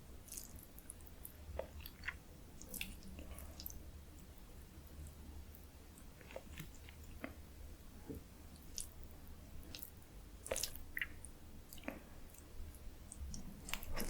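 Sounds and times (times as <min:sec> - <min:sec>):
chewing and biting food: 0:00.3 - 0:03.8, 0:09.6 - 0:11.1, 0:13.1 - 0:14.0.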